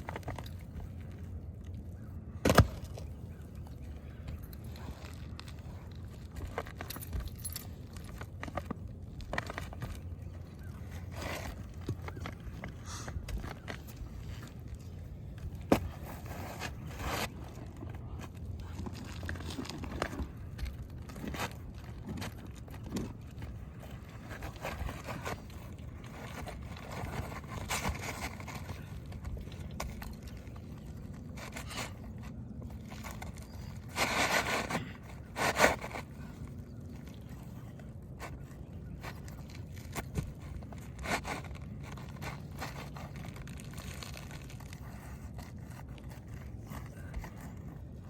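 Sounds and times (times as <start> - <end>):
tools scraping roof shingles: 15.2 - 37.5.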